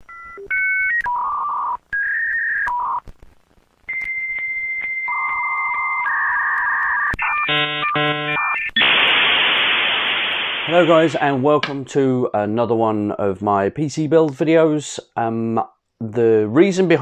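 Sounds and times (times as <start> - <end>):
dial-up modem tones: 0.0 - 3.0, 3.9 - 9.6
loud hiss: 8.8 - 11.7.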